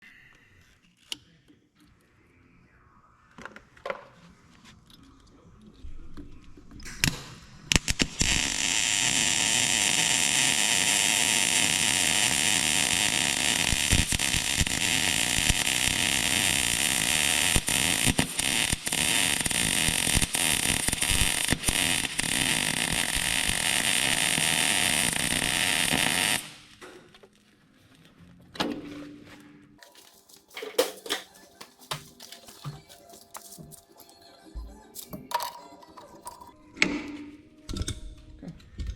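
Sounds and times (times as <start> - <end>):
welding arc striking clicks: 6.8 - 26.8
welder crackling buzzing hiss: 6.9 - 26.8.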